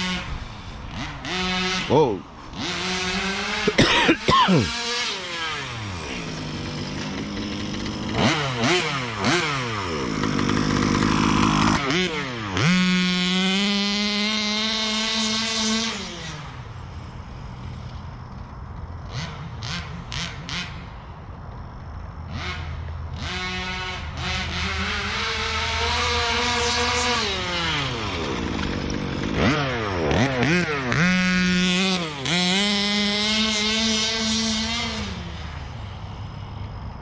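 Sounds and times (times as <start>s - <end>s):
two-stroke engine revving: 0.0s - 17.9s, 19.0s - 21.0s, 22.2s - 36.6s.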